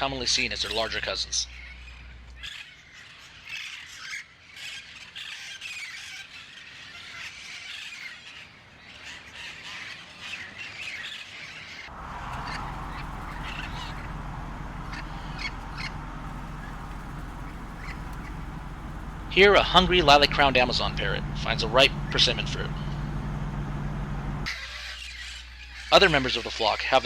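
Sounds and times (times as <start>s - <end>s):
parakeets squawking and screeching: 11.5s - 23.8s, 24.5s - 27.0s
steady low rumble: 11.9s - 24.5s.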